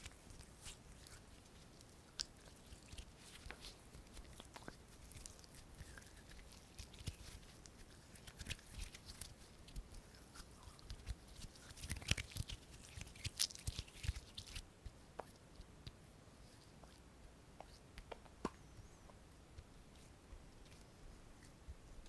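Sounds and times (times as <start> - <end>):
skin rubbing: 0.0 - 14.6
soft clicks and crackles: 0.0 - 17.0.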